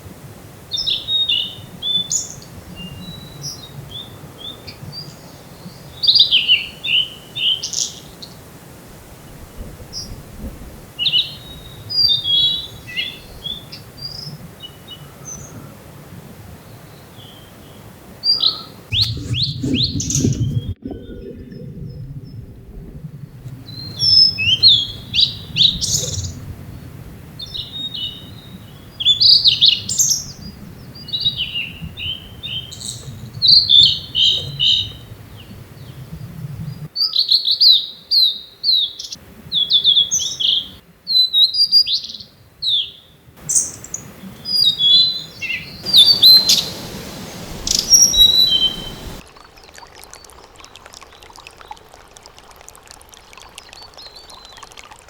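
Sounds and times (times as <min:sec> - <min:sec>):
low rumble: 0:18.9 - 0:24.1
bird singing whistled phrases: 0:44.5 - 0:49.2.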